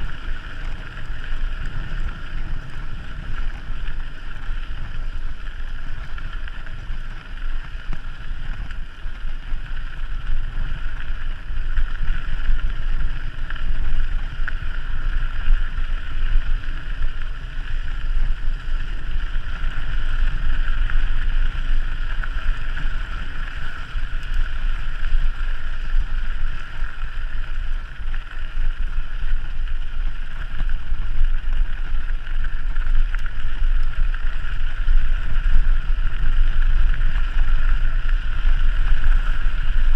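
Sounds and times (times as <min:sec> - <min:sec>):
wind buffeting microphone: 0:00.0 - 0:28.1.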